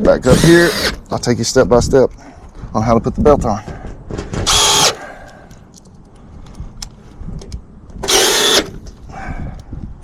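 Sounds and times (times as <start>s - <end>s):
cordless drill driving screws: 0.2s - 1.0s, 4.4s - 5.0s, 8.0s - 8.8s.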